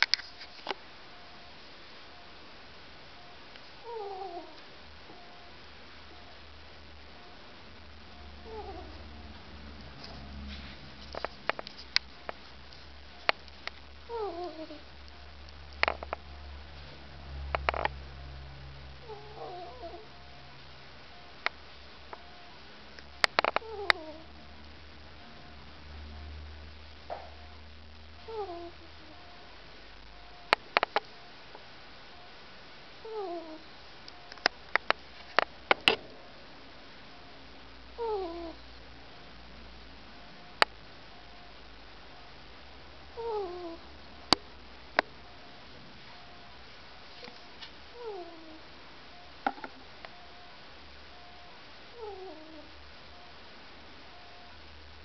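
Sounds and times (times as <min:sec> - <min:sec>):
ferret snoring: 0:03.8 - 0:05.2, 0:08.3 - 0:09.3, 0:14.0 - 0:14.9, 0:19.0 - 0:20.1, 0:23.3 - 0:24.3, 0:28.2 - 0:29.5, 0:33.0 - 0:33.7, 0:38.0 - 0:38.6, 0:43.1 - 0:43.8, 0:47.9 - 0:48.7, 0:51.9 - 0:52.7.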